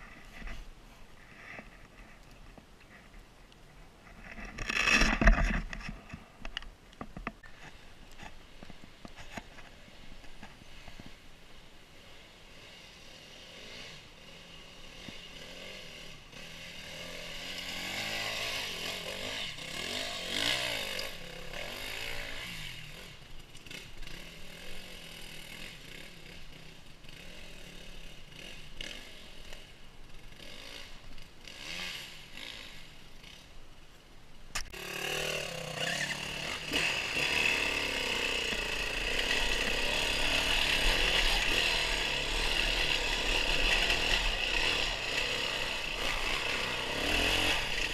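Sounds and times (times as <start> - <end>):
off-road vehicle engine revving: 12.0 - 29.7, 30.3 - 33.4, 34.7 - 47.9.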